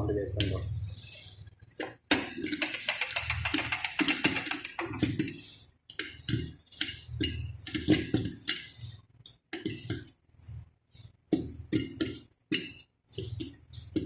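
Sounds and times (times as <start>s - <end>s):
popcorn popping in covered pot: 1.8s - 10.3s, 11.3s - 14.0s.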